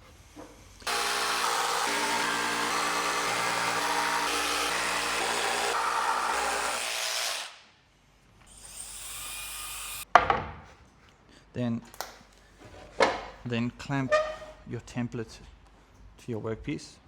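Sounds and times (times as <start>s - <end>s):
woodworking power tool running: 0.8s - 7.6s.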